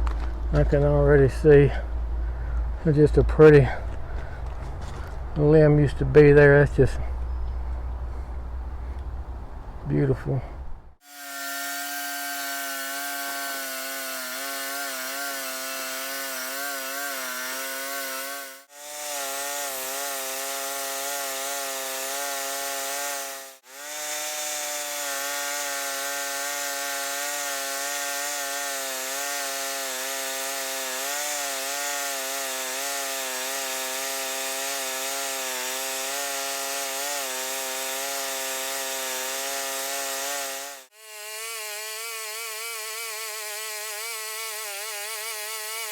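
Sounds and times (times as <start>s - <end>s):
sawmill droning while cutting log: 11.0s - 45.9s.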